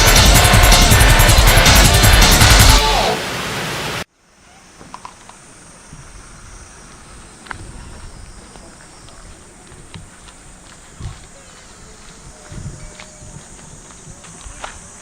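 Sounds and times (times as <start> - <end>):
loud intro sound: 0.0 - 4.1
cicadas droning: 4.1 - 15.0.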